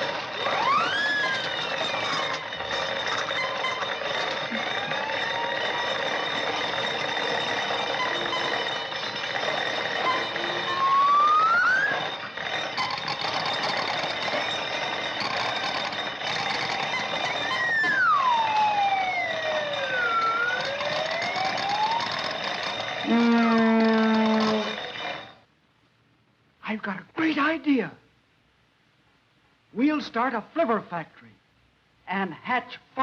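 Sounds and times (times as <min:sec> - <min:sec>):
film soundtrack hiss and whine: 0:00.0 - 0:33.0
whistle sound effects gliding in pitch: 0:00.5 - 0:02.0, 0:10.0 - 0:12.2, 0:17.4 - 0:22.1.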